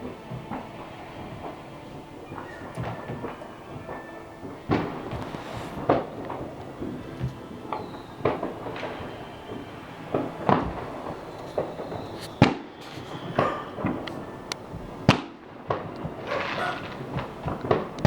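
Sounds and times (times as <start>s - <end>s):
fireworks bangs and pops: 0.0s - 18.0s.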